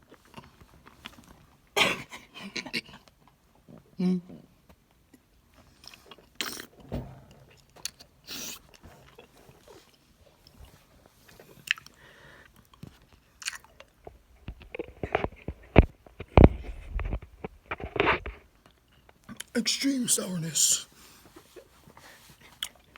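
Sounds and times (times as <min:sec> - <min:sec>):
mouth chewing hard candy: 0:00.0 - 0:01.8, 0:04.6 - 0:06.8, 0:07.4 - 0:14.9.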